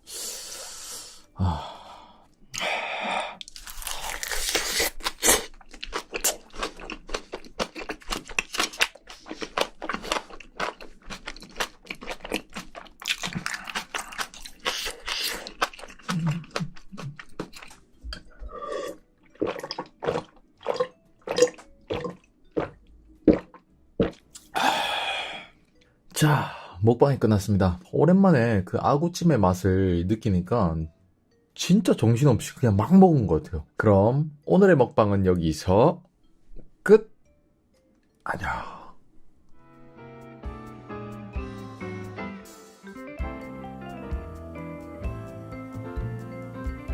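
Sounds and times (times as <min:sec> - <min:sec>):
chewing and crunching food: 0:03.4 - 0:24.5.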